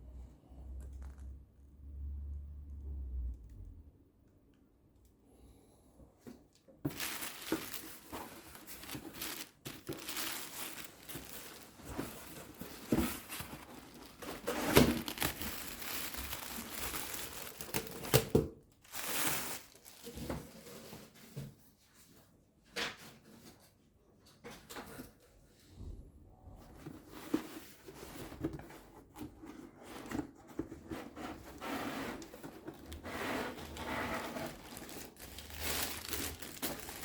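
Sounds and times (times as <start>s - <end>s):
packaging crinkling and rustling: 6.8s - 21.4s, 26.8s - 37.0s.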